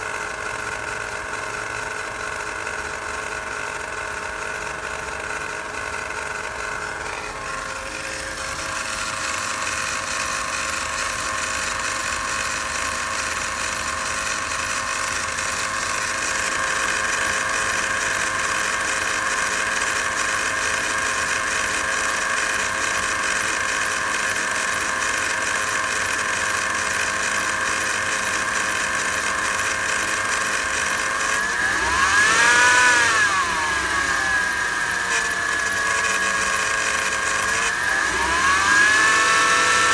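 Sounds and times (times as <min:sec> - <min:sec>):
engine revving: 0:31.0 - 0:39.9.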